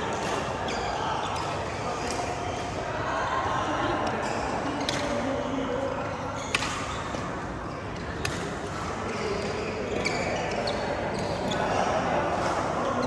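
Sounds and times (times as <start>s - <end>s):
steady background noise: 0.0s - 13.0s
rackets hitting shuttlecock: 6.5s - 7.4s, 8.1s - 8.9s.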